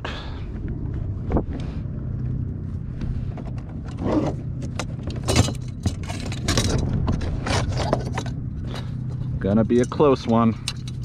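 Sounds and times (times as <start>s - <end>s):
steady low hum: 0.0s - 11.0s
knocks rattles and scrapes: 3.3s - 11.0s.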